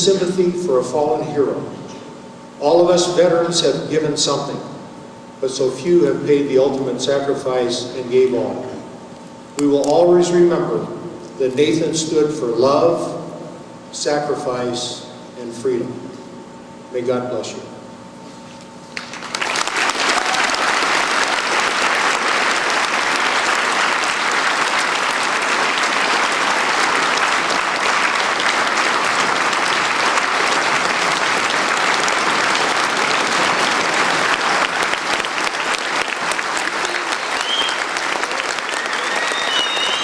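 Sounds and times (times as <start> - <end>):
audience applauding: 19.0 - 40.0
whistle: 37.2 - 37.9, 38.7 - 40.0.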